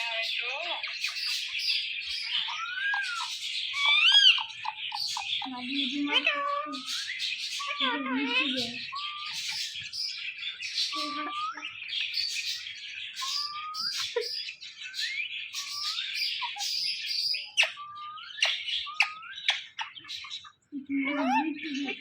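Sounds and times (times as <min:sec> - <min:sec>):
parakeet chattering and calling: 0:00.0 - 0:22.0.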